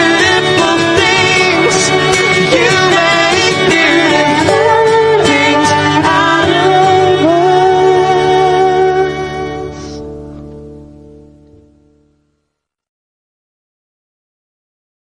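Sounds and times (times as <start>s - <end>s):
singing with long wavering notes: 0.0s - 9.8s
sustained music accompaniment: 0.0s - 12.4s.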